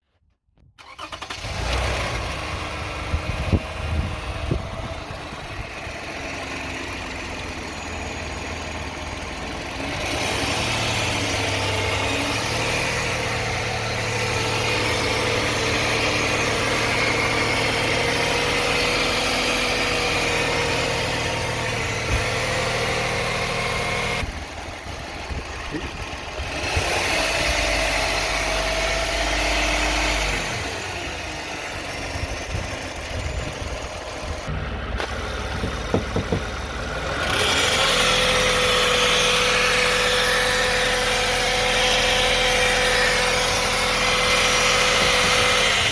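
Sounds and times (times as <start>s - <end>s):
car engine idling: 2.4s - 18.8s, 23.3s - 28.5s, 30.7s - 38.6s
clunks: 34.4s - 37.5s.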